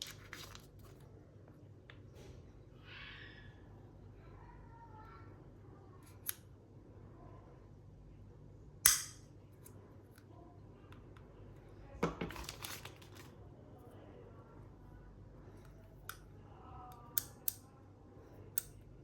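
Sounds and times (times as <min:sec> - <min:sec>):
sharp plastic snap: 0:08.9 - 0:09.3.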